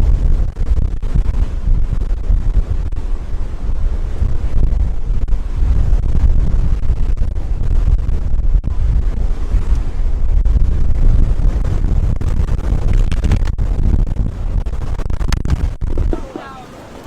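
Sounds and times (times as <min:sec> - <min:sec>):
wind buffeting microphone: 0:00.0 - 0:17.0
jet engines rumbling: 0:14.2 - 0:17.0.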